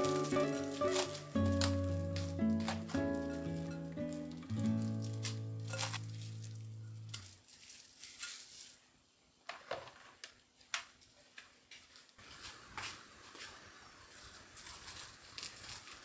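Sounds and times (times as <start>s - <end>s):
held music note: 0.0s - 7.1s
objects clicking and tapping: 0.0s - 7.3s.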